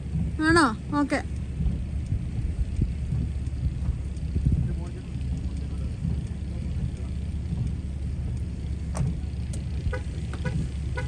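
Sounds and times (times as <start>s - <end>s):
car engine rumble inside cabin: 0.0s - 11.0s.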